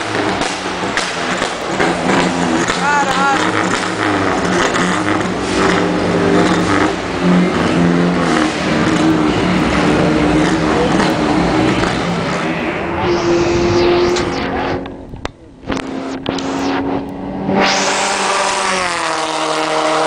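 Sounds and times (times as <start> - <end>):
car engine revving loudly: 0.0 - 20.0.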